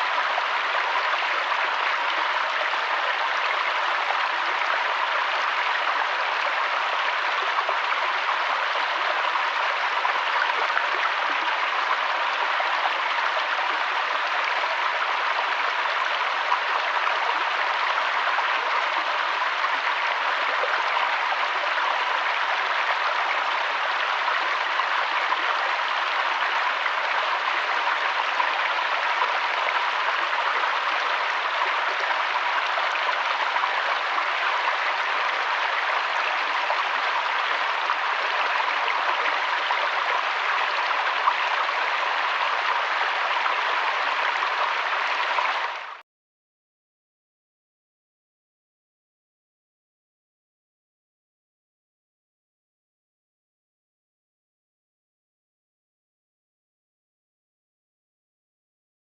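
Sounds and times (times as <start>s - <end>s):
running water rushing: 0.0s - 46.0s.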